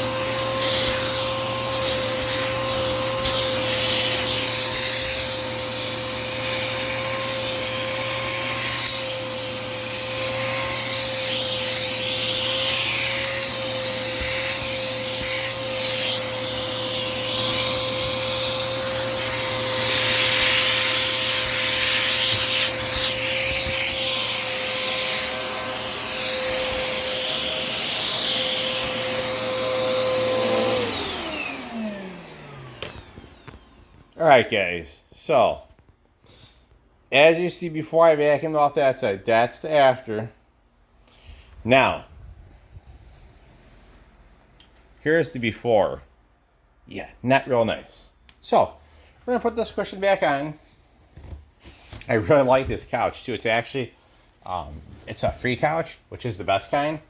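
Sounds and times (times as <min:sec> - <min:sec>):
vacuum cleaner motor whine: 0:00.0 - 0:34.2.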